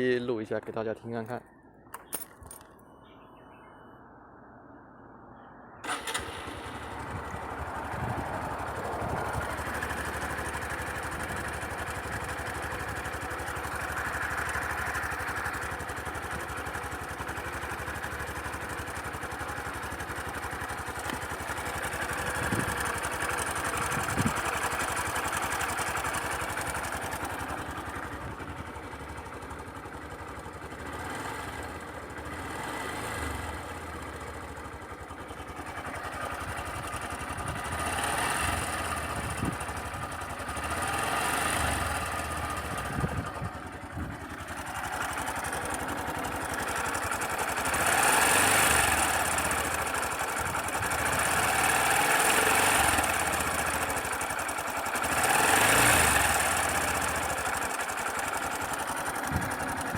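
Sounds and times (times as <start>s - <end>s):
motorcycle engine running: 5.8s - 59.9s.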